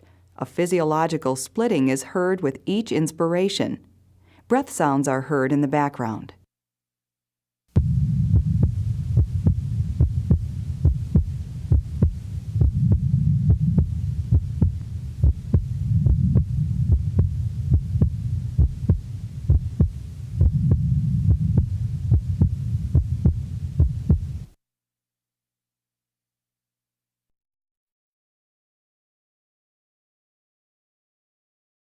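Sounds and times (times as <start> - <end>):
breath sounds: 4.2 - 4.5
heartbeat through stethoscope: 7.8 - 24.5.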